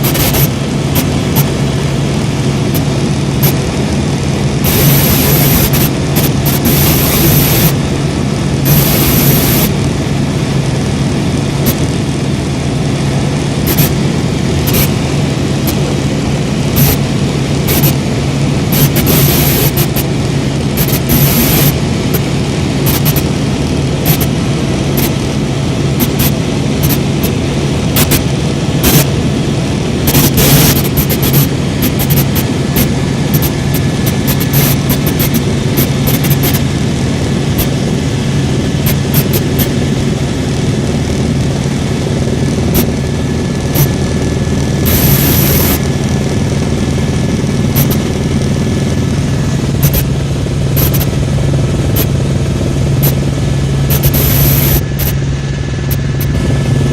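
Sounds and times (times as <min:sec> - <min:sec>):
helicopter engine and rotor: 0:00.0 - 0:56.9.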